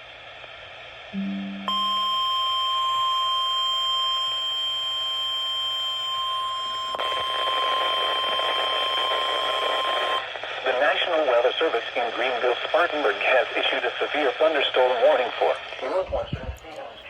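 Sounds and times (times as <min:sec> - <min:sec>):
steady high alert tone: 0:01.2 - 0:02.3
brief lower tone: 0:01.2 - 0:08.2
radio static: 0:07.0 - 0:17.0.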